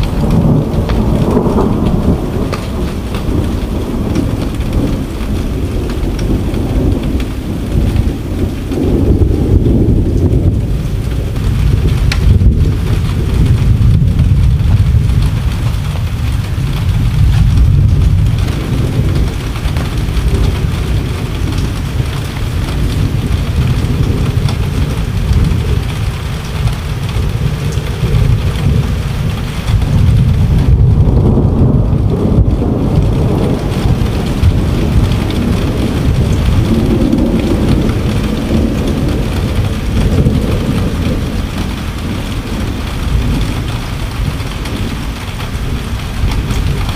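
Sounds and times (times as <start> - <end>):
steady rain: 0.0 - 46.9
thunder rumbling: 0.0 - 46.9.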